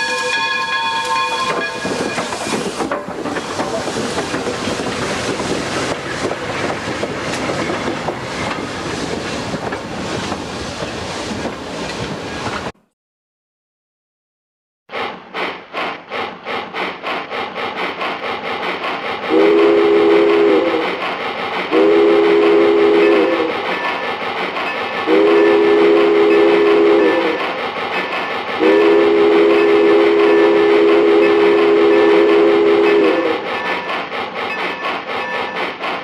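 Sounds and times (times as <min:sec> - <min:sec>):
train whistle blasts: 0:00.0 - 0:02.2, 0:19.3 - 0:20.8, 0:21.7 - 0:23.9, 0:25.0 - 0:27.4, 0:28.6 - 0:33.9
steam train chugging: 0:00.0 - 0:12.7, 0:14.9 - 0:36.0.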